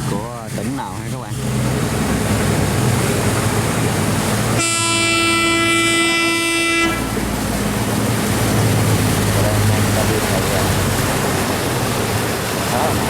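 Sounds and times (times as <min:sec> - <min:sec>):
barge engine drone: 0:00.0 - 0:13.0
barge horn blast: 0:01.3 - 0:11.6.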